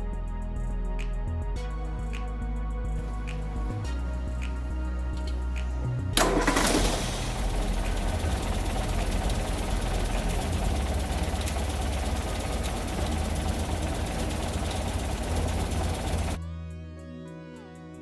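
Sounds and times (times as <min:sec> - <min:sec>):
engine idling: 0:03.0 - 0:16.4.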